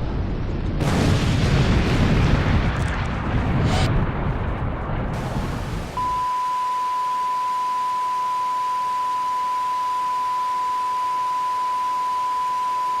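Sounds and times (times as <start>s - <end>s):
electronic test tone: 6.0s - 13.0s.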